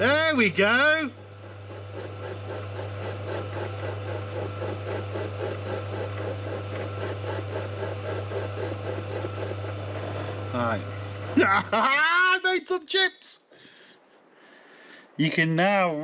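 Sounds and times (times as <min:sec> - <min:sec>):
fast repeating cutting sound: 0:00.0 - 0:09.8
lathe motor hum: 0:00.0 - 0:11.8.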